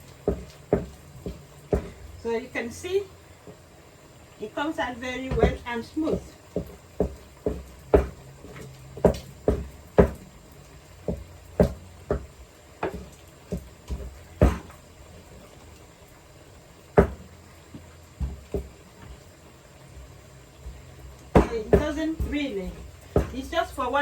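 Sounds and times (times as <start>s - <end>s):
rolling pin pounding yam: 0.0s - 2.2s, 5.2s - 10.4s, 11.0s - 14.9s, 16.9s - 19.2s, 20.0s - 24.0s.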